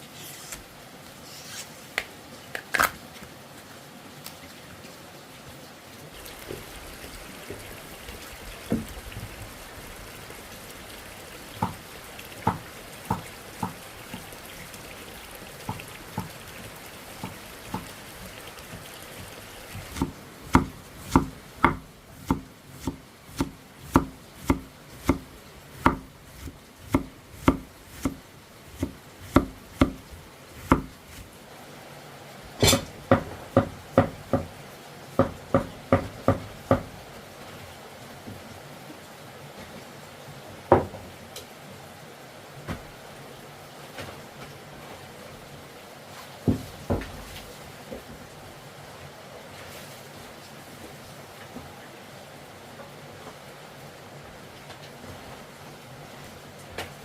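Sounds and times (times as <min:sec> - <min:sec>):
blade chopping wood: 0:19.8 - 0:28.2, 0:30.6 - 0:31.2.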